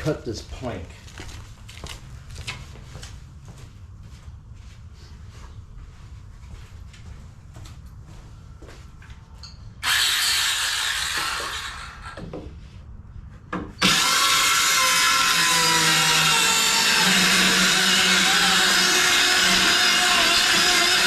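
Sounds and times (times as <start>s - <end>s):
power saw cutting plywood: 9.8s - 12.2s, 13.8s - 21.0s.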